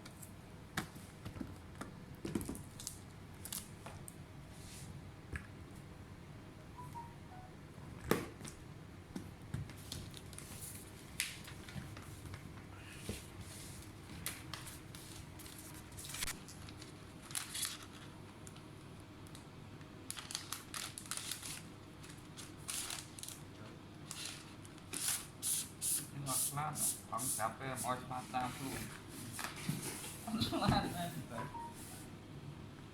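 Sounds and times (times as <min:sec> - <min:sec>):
rustling and scraping handling: 0:27.8 - 0:32.1.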